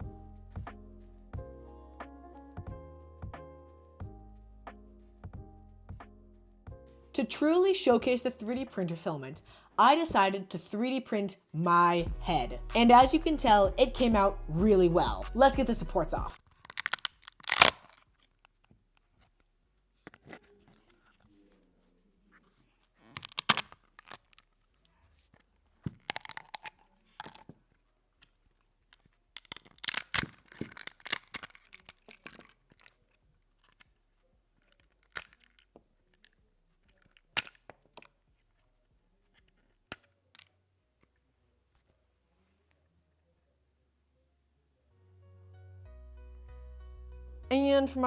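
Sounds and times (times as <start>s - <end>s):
plastic snapping and crackling: 16.4s - 21.3s, 22.7s - 24.8s, 25.4s - 27.6s, 28.2s - 41.2s.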